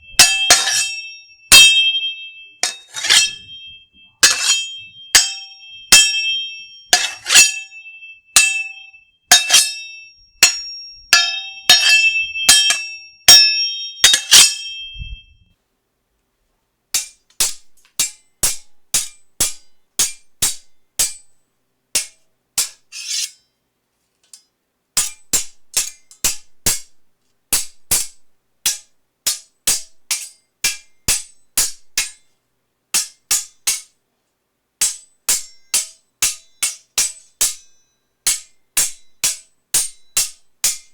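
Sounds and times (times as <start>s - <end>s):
ringing sword blade strikes: 0.0s - 15.3s.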